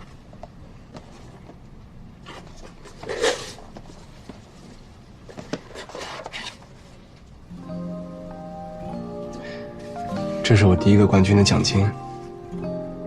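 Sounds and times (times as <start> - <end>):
gift wrapping rustling: 2.2 - 4.8.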